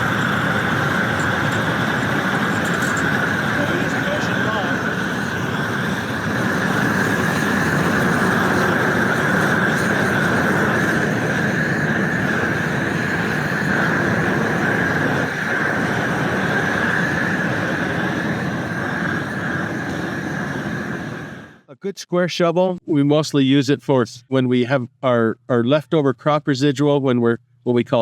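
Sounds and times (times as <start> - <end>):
flame torch hissing: 0.0 - 21.7.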